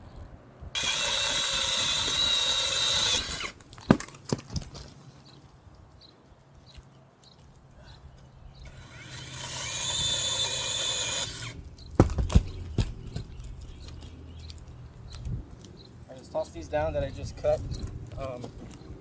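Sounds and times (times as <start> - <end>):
chainsaw cutting: 0.8 - 3.6, 8.6 - 12.5
sharp knocks: 11.9 - 13.0.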